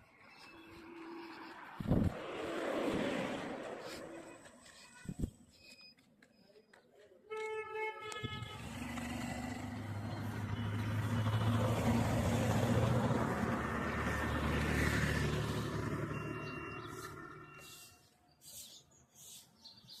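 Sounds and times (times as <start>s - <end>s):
vehicle engine rumble: 0.0s - 5.8s, 8.2s - 18.0s.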